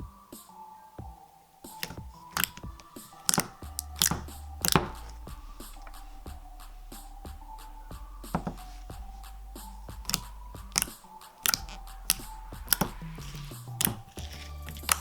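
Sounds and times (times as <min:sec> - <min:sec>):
faint background music: 0:00.0 - 0:15.0.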